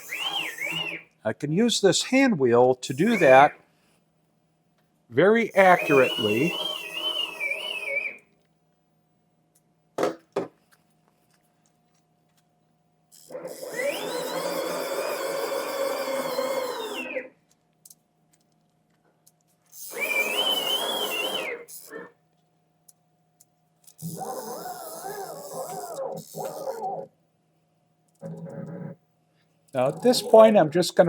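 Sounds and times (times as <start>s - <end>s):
drive motors whining: 0.0s - 1.1s, 2.9s - 3.6s, 5.5s - 8.2s, 13.2s - 17.4s, 19.8s - 22.1s.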